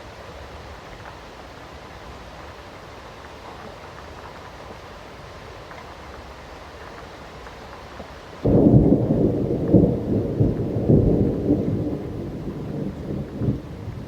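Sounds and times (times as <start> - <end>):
steady rain: 0.0 - 14.0
thunder rumbling: 8.4 - 14.0.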